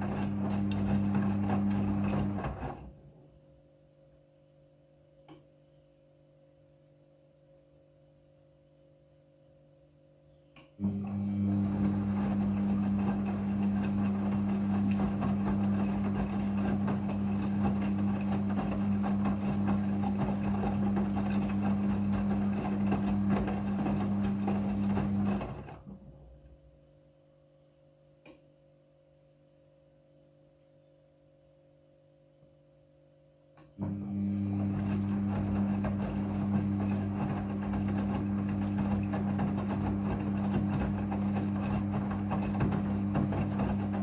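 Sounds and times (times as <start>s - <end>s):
washing machine drum turning: 34.5s - 44.0s.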